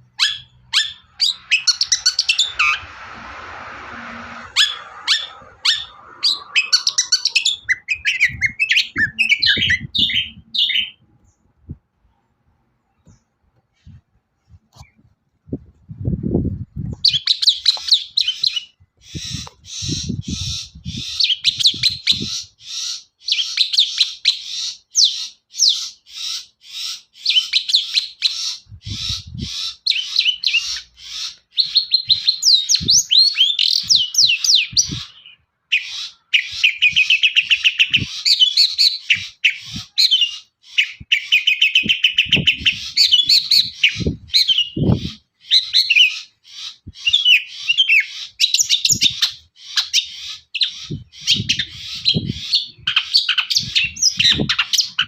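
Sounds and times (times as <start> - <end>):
shrike singing rapid chattering song: 0.0 - 11.0.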